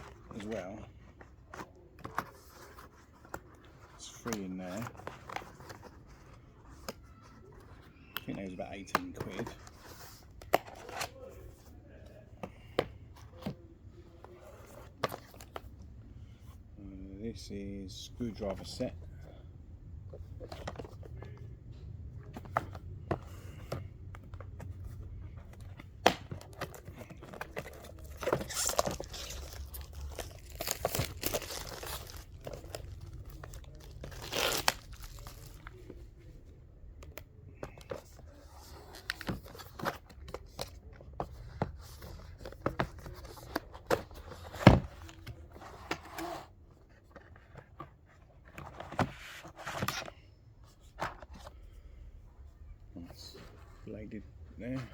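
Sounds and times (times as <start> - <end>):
packaging crinkling and rustling: 26.4 - 35.9.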